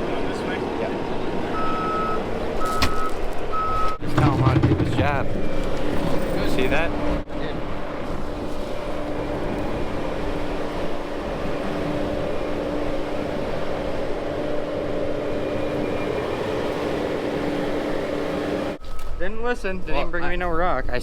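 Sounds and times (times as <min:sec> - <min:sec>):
heavy equipment engine running: 0:00.0 - 0:18.8
bucket working rock: 0:04.0 - 0:06.7.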